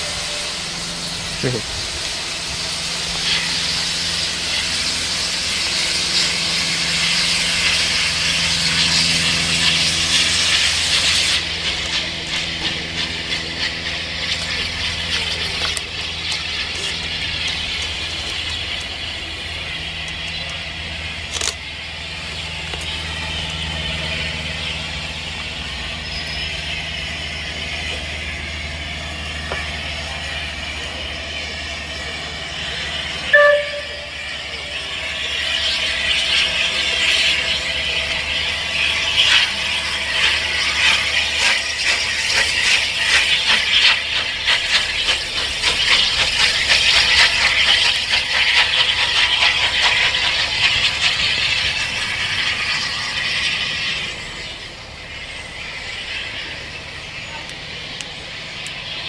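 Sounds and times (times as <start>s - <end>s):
hissing locomotive exhaust beats: 0.0s - 59.0s
steam locomotive whistle toot: 26.0s - 44.8s.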